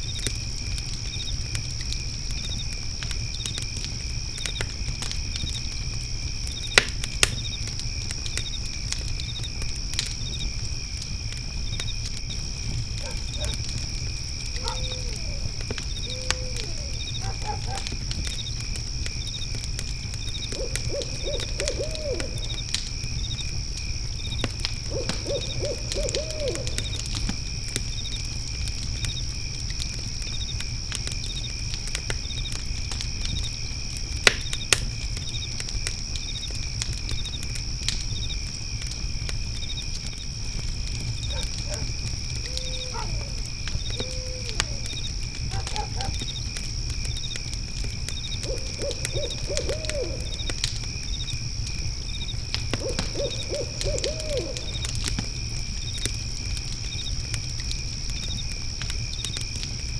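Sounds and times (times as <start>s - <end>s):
crickets chirping: 0.0s - 59.9s
fire crackling and popping: 0.0s - 59.9s
owl hooting: 14.6s - 17.8s, 20.5s - 22.6s, 24.9s - 27.0s, 41.3s - 44.9s, 45.5s - 46.2s, 48.4s - 50.4s, 52.8s - 54.8s.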